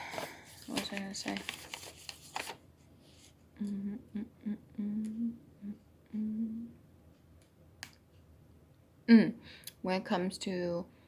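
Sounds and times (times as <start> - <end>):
woman humming: 3.6 - 6.8.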